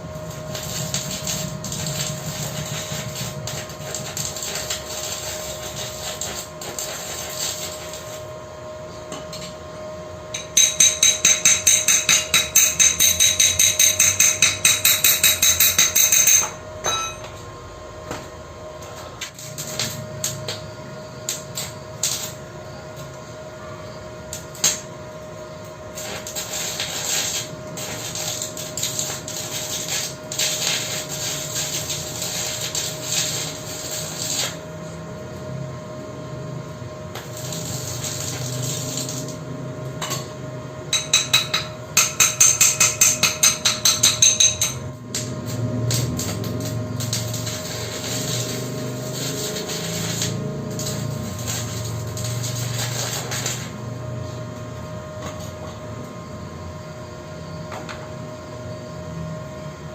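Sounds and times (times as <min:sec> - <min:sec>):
hammer striking steel: 0:10.4 - 0:17.4, 0:40.9 - 0:44.9.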